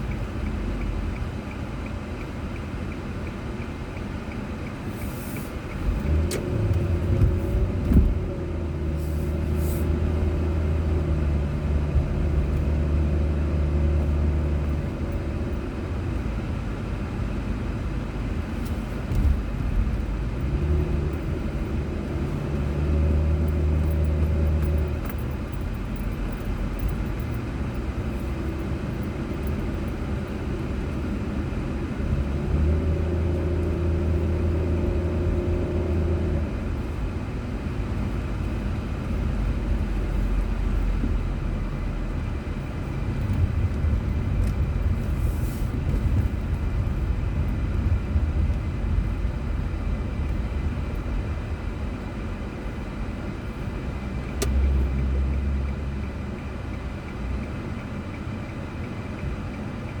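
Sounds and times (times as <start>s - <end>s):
car engine and tyre rumble: 0.0s - 60.0s.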